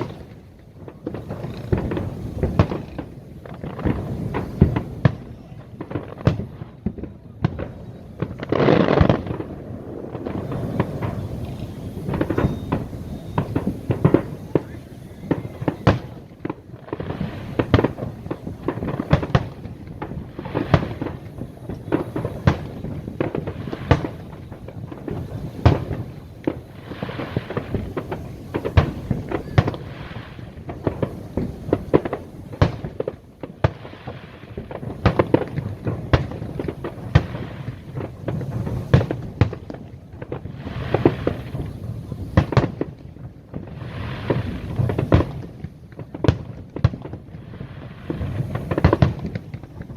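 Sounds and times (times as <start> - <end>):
firework shells bursting: 0.0 - 43.0
continuous crackling rumble: 0.0 - 49.9.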